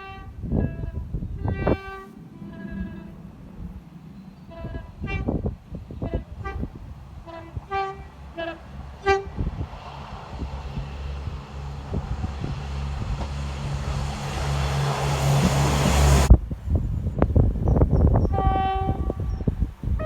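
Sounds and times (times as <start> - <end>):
train horn short toots: 0.0 - 3.2, 4.5 - 9.6, 18.2 - 19.4
rush of approaching train: 0.0 - 20.0.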